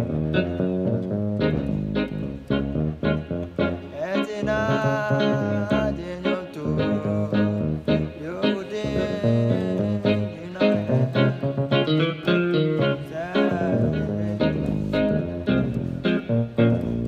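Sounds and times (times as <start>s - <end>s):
accompanying music: 0.0s - 17.0s
bass guitar walking bassline: 0.0s - 17.0s.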